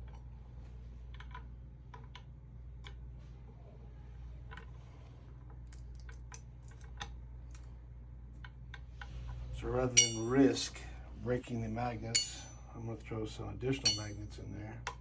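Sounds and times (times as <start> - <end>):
magnets and metal parts clicking: 5.7 - 7.6
low hum: 9.4 - 12.9.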